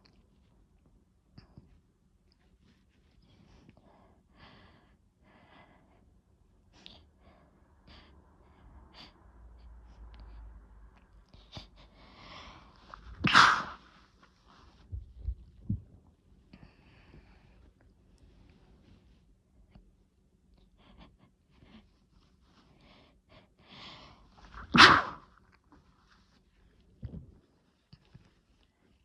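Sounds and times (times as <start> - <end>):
soft uneven breaths: 1.3 - 15.0, 16.4 - 19.9, 20.6 - 29.0
person sneezing: 13.2 - 13.8, 24.5 - 25.3.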